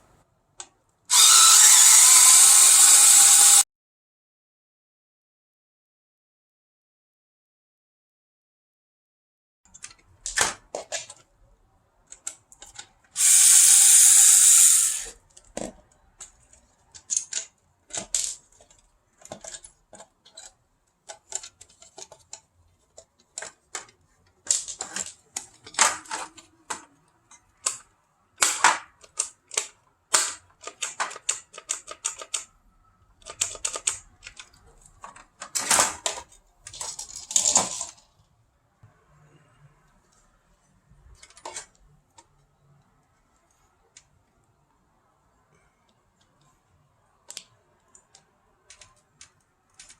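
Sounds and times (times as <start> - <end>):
power tool whirring: 1.1 - 3.6, 13.2 - 15.1
plastic parts clicking and knocking: 9.7 - 38.2, 41.0 - 42.6, 47.2 - 49.9.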